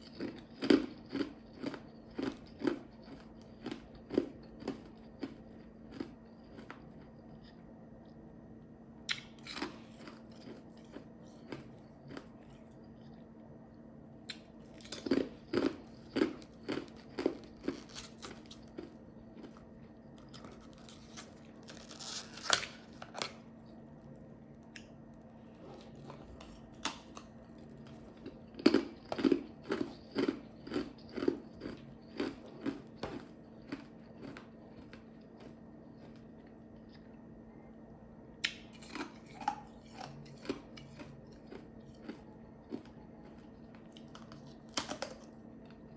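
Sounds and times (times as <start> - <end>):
ice chips crunching: 0.0 - 6.8, 14.6 - 19.6, 25.8 - 36.2, 38.8 - 45.4.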